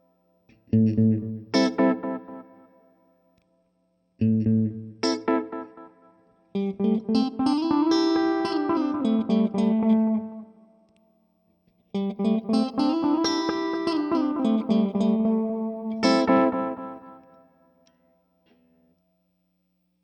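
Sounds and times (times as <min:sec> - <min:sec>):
electric guitar with delay echoes: 0:04.2 - 0:10.8, 0:12.0 - 0:17.4.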